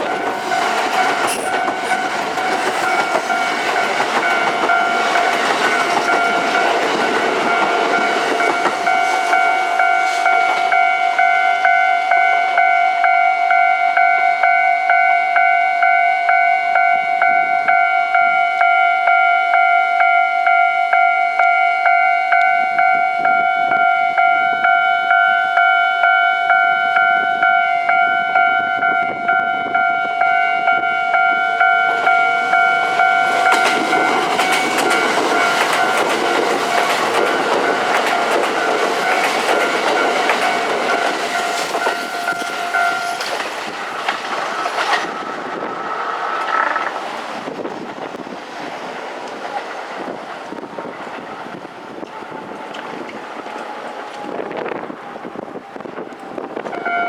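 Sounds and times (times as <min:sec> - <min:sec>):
level crossing warning bell: 0:00.0 - 0:45.8, 0:50.0 - 0:57.0
trains passing with rail noise: 0:00.0 - 0:57.0.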